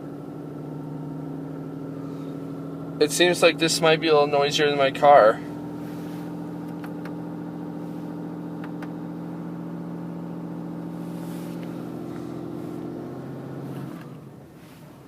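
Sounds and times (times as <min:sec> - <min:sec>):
diesel engine idling hum: 0:00.0 - 0:15.0.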